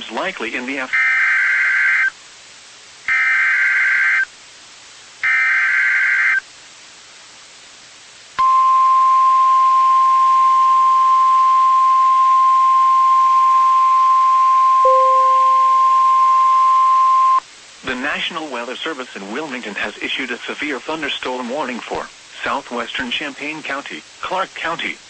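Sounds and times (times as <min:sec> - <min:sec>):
single-pitch warning alarm tone: 0:14.8 - 0:17.4.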